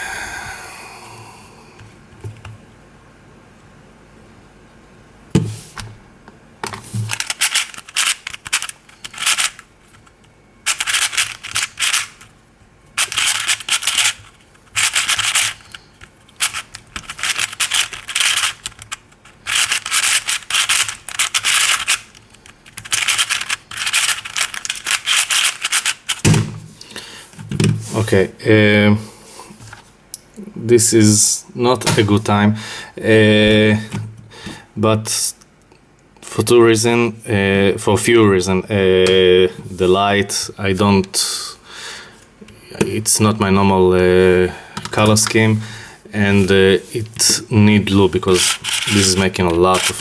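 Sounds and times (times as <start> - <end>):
puzzle cube turning scratchily: 7.1 - 12.3, 13.0 - 26.3, 46.2 - 50.0.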